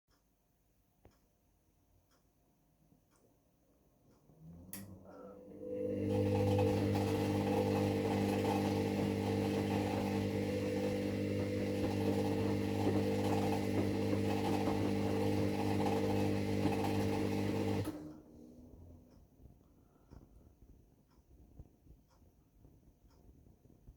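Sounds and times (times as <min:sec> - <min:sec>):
machine humming: 0:04.8 - 0:18.0.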